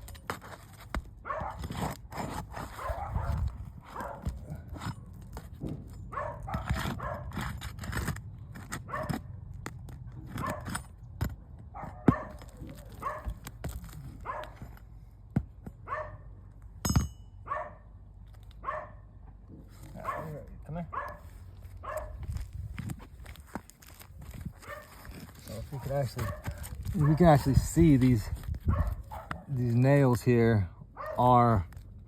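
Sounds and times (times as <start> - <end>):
dog barking: 1.2 - 1.8, 2.7 - 4.4, 6.1 - 7.4, 8.9 - 9.2, 10.4 - 10.8, 11.8 - 13.4, 14.2 - 14.6, 15.8 - 16.3, 17.5 - 17.9, 18.6 - 19.1, 20.0 - 22.2, 24.6 - 25.0, 25.8 - 27.2, 28.7 - 29.5, 31.0 - 31.3.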